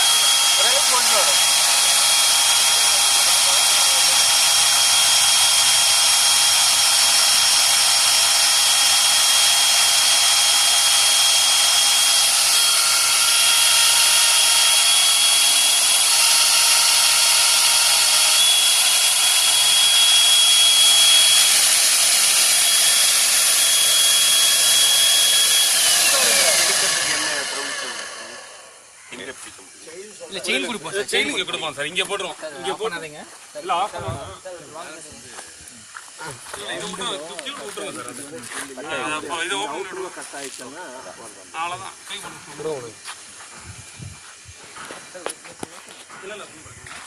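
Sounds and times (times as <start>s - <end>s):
drill whining into metal: 0.0s - 29.0s.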